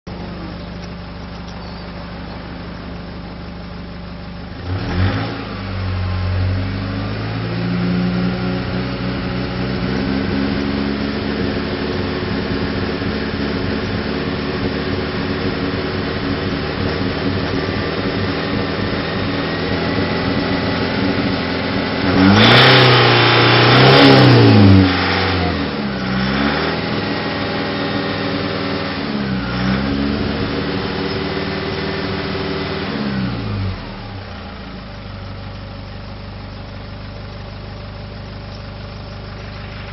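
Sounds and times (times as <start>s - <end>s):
misfiring diesel exhaust revving: 4.6s - 34.0s.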